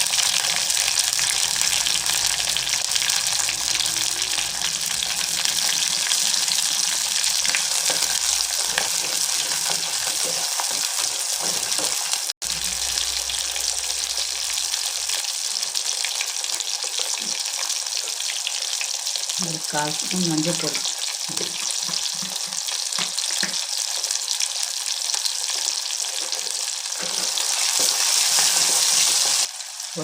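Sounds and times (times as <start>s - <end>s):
shallots sizzling in hot oil: 0.0s - 30.0s.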